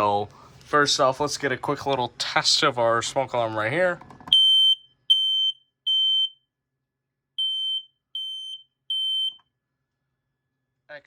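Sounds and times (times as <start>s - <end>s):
smoke alarm beeping: 4.3s - 6.5s, 7.4s - 9.5s.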